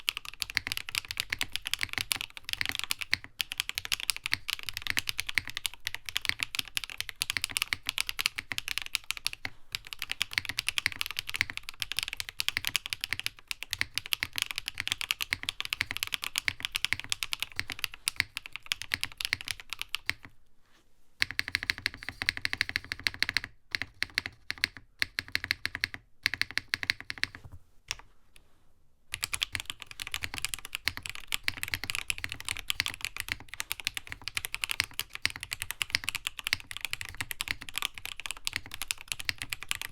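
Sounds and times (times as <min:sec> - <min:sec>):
fast typing on mechanical keyboard: 0:00.0 - 0:20.3, 0:21.2 - 0:27.4, 0:29.1 - 0:39.9.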